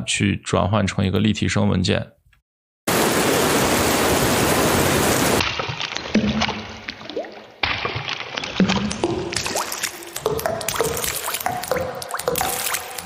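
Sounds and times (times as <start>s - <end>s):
heavy rain hiss: 2.9s - 5.4s
water drops dripping: 5.4s - 13.0s.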